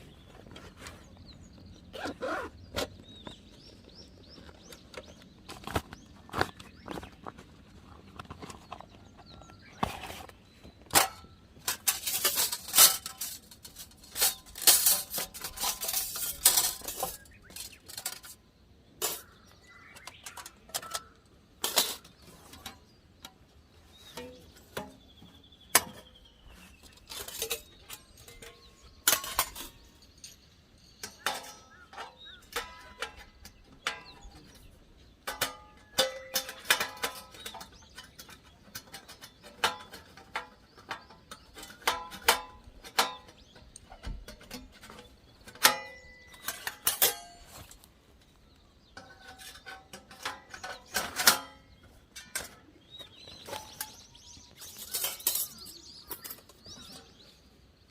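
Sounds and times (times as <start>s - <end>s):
metal parts clinking and clanking: 10.8s - 23.4s, 25.8s - 57.9s.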